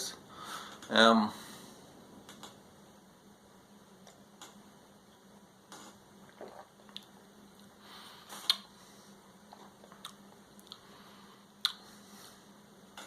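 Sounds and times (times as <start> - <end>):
person swallowing: 6.3 - 7.1
lips smacking: 8.4 - 8.7, 11.6 - 11.8.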